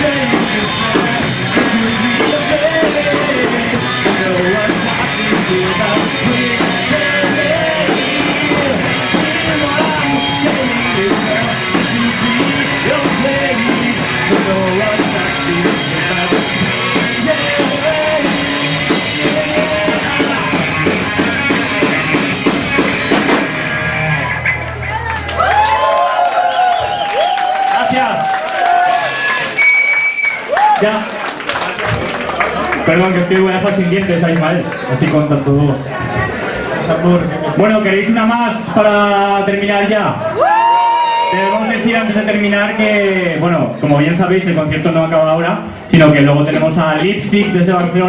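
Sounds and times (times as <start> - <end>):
drum kit: 0.0 - 25.8
rock band playing live: 0.0 - 25.8.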